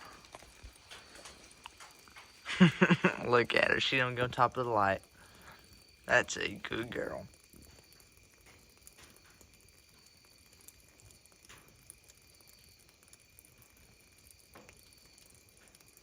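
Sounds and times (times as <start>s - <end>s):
soft ticks: 0.1s - 2.5s, 6.9s - 16.0s.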